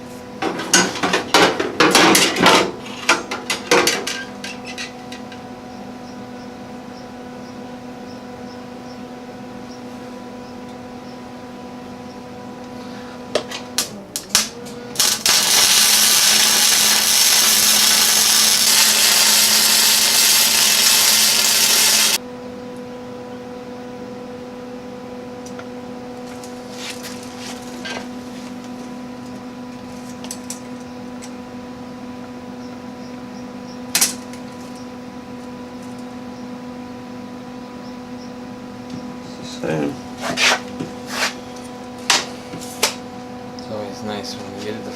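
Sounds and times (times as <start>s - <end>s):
electrical hum: 0.0s - 44.9s
electric arc welding crackling: 14.2s - 22.2s.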